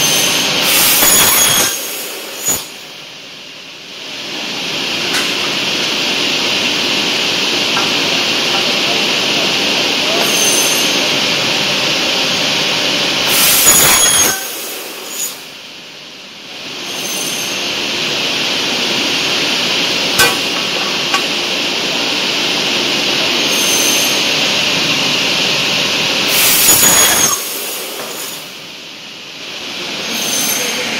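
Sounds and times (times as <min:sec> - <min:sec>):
saw screeching through aluminium: 0:00.0 - 0:02.8, 0:10.2 - 0:11.1, 0:13.3 - 0:15.4, 0:26.3 - 0:28.4
circular saw whining: 0:00.0 - 0:02.9, 0:04.5 - 0:15.6, 0:16.8 - 0:24.9, 0:26.2 - 0:28.6, 0:29.7 - 0:30.9.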